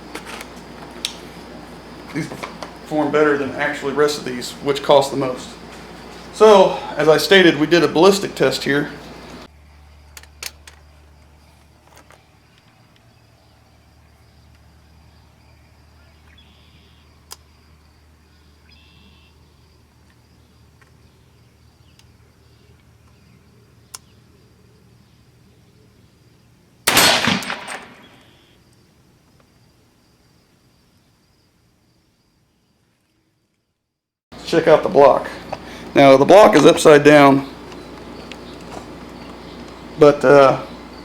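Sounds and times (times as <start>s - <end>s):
rifle shot: 26.9s - 28.4s.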